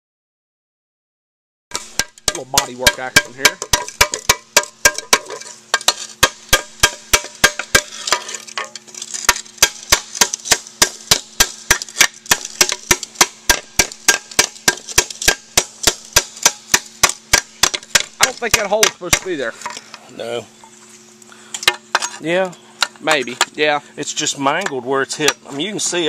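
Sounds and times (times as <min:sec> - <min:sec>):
hammer striking metal: 0:01.7 - 0:19.8
faint steady hum: 0:01.8 - 0:26.0.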